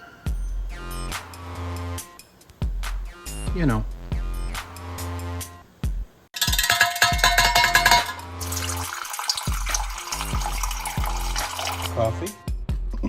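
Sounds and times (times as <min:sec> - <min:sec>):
background music with bass beat: 0:00.3 - 0:08.7, 0:09.5 - 0:13.0
water pouring and splashing: 0:06.4 - 0:12.0.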